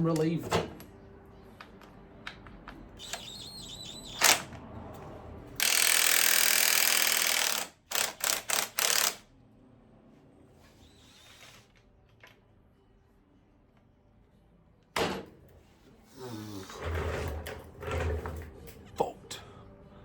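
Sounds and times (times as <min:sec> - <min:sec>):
impact driver running: 0:05.6 - 0:09.2.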